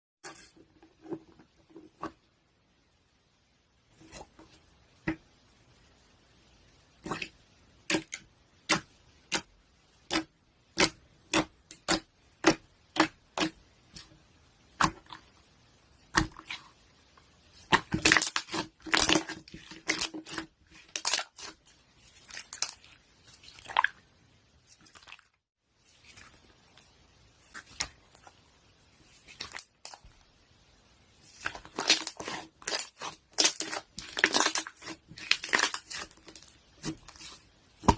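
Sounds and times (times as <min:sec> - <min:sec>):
crackling and crinkling: 0:16.0 - 0:30.4, 0:31.2 - 0:37.9.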